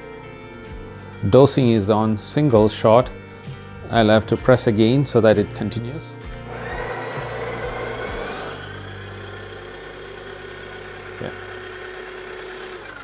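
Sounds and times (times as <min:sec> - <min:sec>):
coffee grinder motor grinding: 0:06.5 - 0:13.0.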